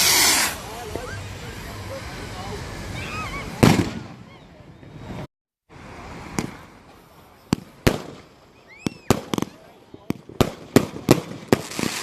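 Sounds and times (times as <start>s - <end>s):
fireworks bangs: 0.0s - 5.2s, 6.1s - 12.0s
faint short whistles: 8.6s - 9.2s.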